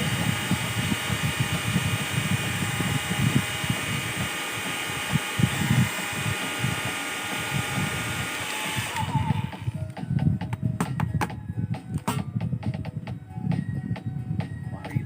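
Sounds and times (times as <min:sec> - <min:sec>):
small electric tool whining: 0:00.0 - 0:10.2.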